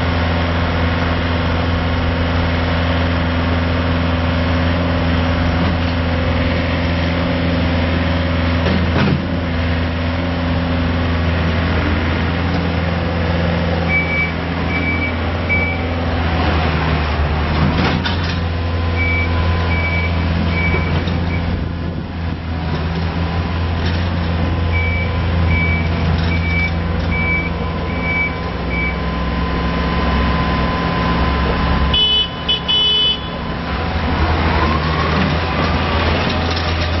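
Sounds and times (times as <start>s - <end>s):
track loader engine humming: 0.0s - 37.0s
backup alarm beeping: 24.7s - 29.0s.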